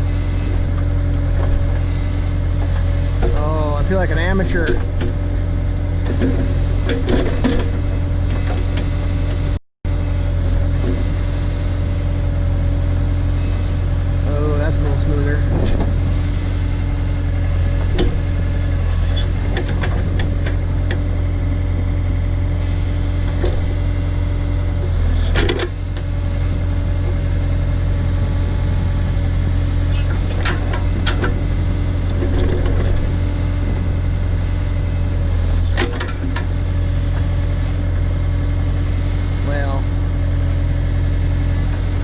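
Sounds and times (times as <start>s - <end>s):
backhoe engine running: 0.0s - 42.0s.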